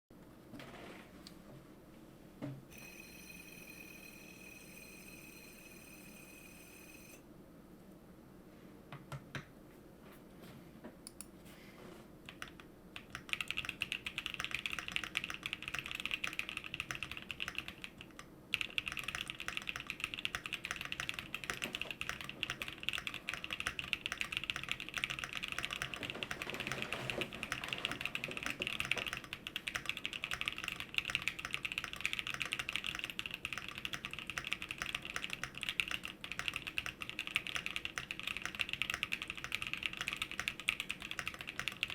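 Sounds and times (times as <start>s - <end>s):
typing on mechanical keyboard: 12.3s - 41.9s.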